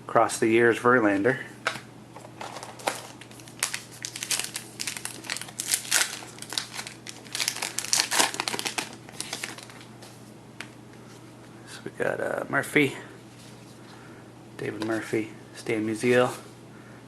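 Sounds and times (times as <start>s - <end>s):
wrapper crinkling and tearing: 2.5s - 9.9s.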